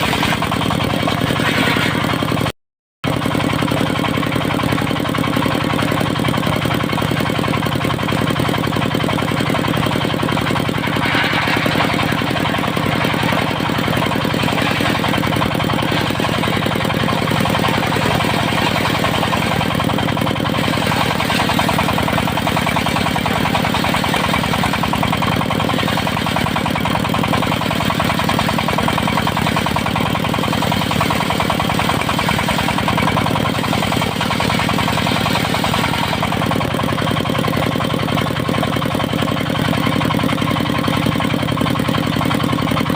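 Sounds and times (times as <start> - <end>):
sawmill engine knocking: 0.0 - 42.9
saw rasping: 10.3 - 22.0.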